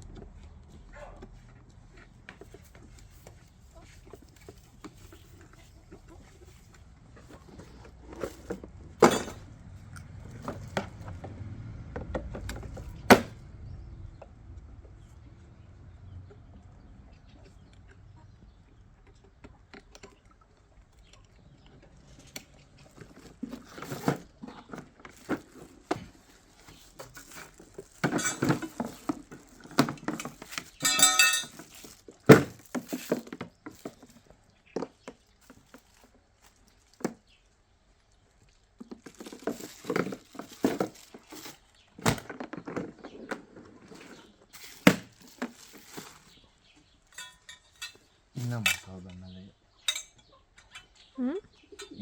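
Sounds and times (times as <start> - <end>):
mower parts clattering and knocking: 0.0 - 13.4, 19.0 - 37.4, 38.6 - 52.0
ringing clink: 30.8 - 31.5.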